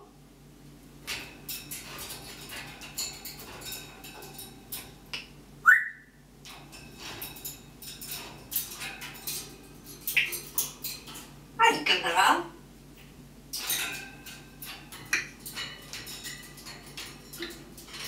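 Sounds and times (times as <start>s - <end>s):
parrot rising whistle: 5.6s - 6.1s.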